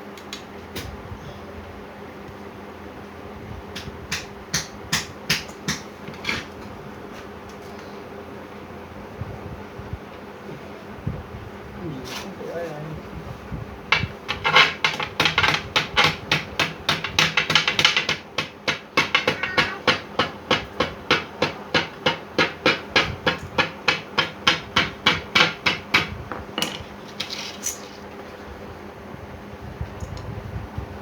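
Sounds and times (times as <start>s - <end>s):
hammering: 13.9s - 26.8s.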